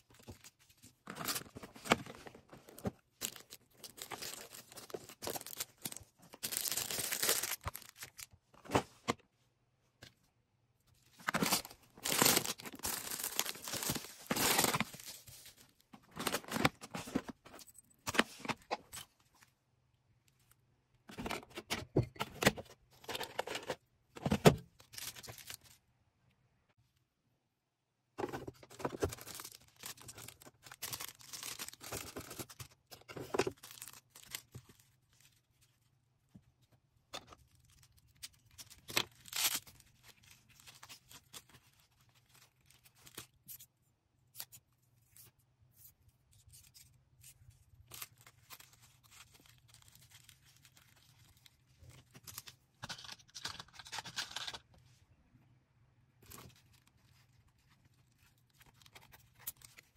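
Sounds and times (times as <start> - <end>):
plastic packaging crinkling: 1.0 - 8.3, 11.3 - 17.0, 28.8 - 32.6.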